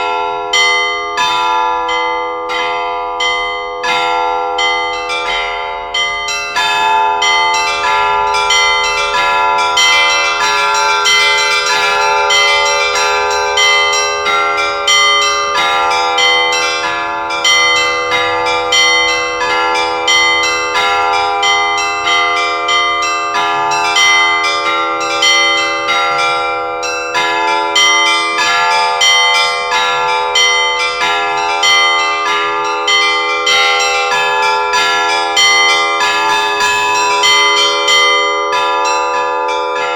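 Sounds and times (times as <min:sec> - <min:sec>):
large bells ringing: 0:00.0 - 0:39.9.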